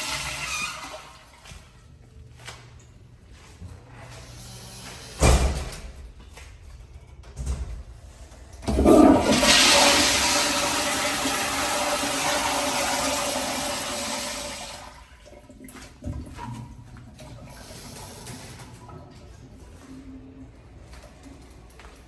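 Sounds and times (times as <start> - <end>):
toilet flushing: 0.0 - 1.8, 8.5 - 21.4.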